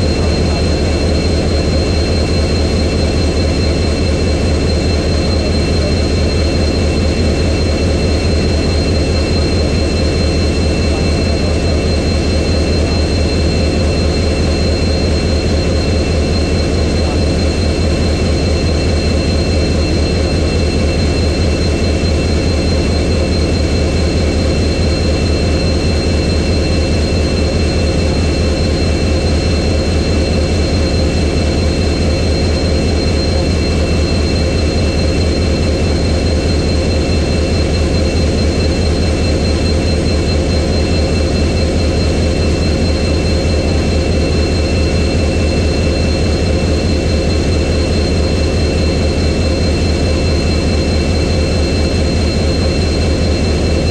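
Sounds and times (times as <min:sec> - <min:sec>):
high-pitched whines: 0:00.0 - 0:53.9
locomotive diesel engine idling: 0:00.0 - 0:53.9.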